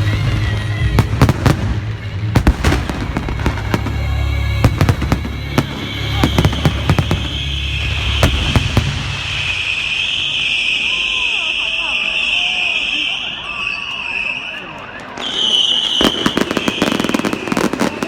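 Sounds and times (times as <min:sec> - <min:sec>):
background music: 0:00.0 - 0:09.8
fireworks bangs and crackles: 0:00.0 - 0:18.0.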